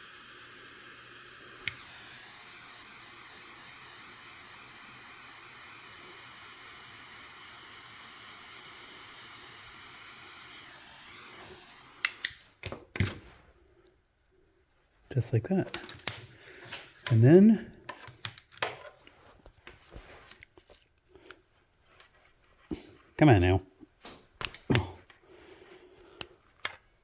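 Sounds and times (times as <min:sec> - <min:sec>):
blower hissing: 0:00.0 - 0:12.6, 0:15.1 - 0:18.8, 0:24.4 - 0:26.8
sharp clicks: 0:24.4 - 0:25.2.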